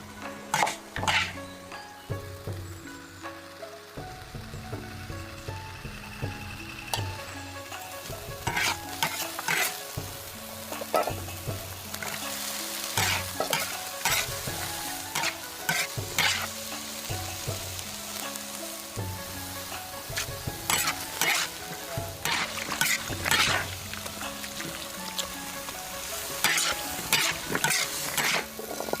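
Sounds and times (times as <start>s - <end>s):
food sizzling in a pan: 0.0s - 29.0s
scraping while stirring: 8.4s - 9.8s, 15.2s - 16.5s, 20.7s - 21.5s, 22.2s - 23.6s, 26.5s - 29.0s.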